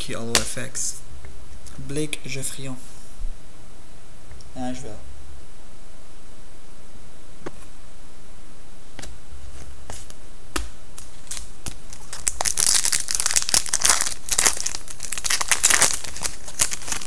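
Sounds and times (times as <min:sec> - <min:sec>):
foil wrapper crinkling and tearing: 0:11.0 - 0:17.0.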